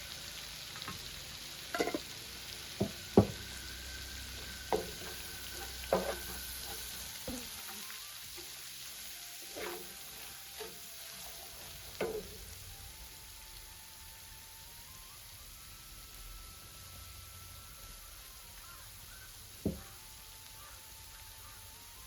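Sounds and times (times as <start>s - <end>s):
food sizzling in a pan: 0.0s - 22.0s
spoon knocking against pan: 1.8s - 2.0s, 2.8s - 3.4s, 4.7s - 7.6s, 19.7s - 19.9s.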